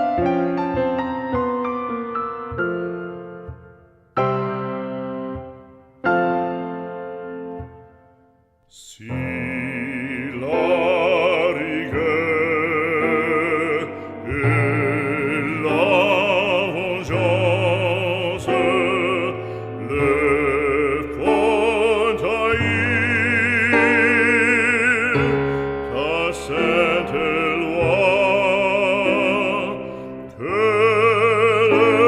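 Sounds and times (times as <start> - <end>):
classical accompaniment: 0.0 - 32.0
operatic singing: 8.6 - 32.0.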